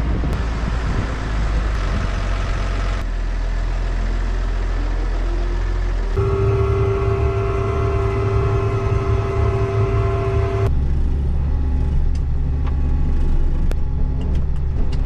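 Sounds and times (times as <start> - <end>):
large diesel engine running: 6.2 - 10.7.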